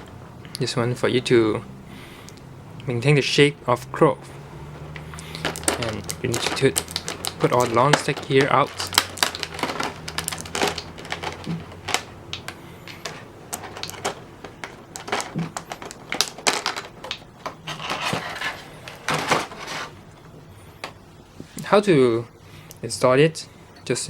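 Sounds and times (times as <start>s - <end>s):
plastic parts clicking and knocking: 5.0s - 19.9s.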